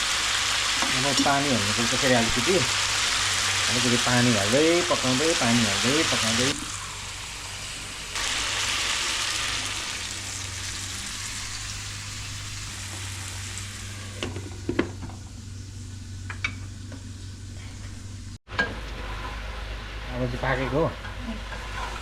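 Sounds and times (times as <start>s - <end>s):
chicken sizzling in a pan: 0.0s - 17.5s.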